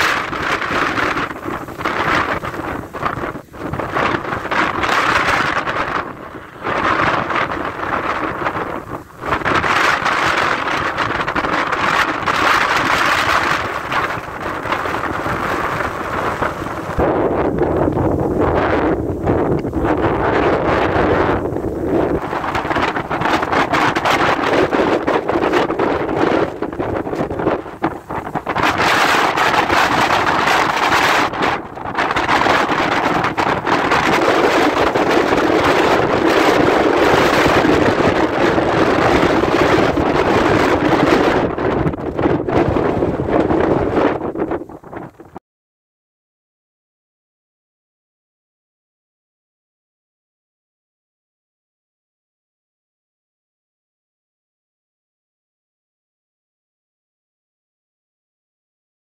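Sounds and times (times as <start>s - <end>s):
strong gusting wind: 0.0s - 45.4s
wind buffeting microphone: 0.0s - 45.4s.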